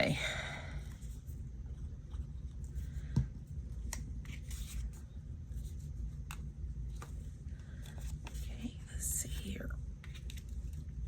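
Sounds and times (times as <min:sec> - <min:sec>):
low room hum: 0:00.0 - 0:11.0.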